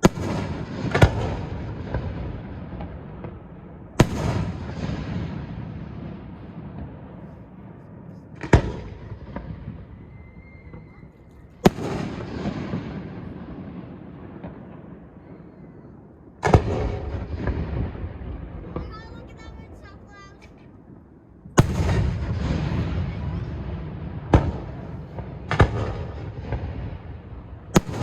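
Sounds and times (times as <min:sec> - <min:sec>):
firework shells booming: 0:00.0 - 0:15.8, 0:16.4 - 0:19.9, 0:20.8 - 0:28.0
faint firework whistle: 0:09.7 - 0:11.8, 0:15.2 - 0:16.0.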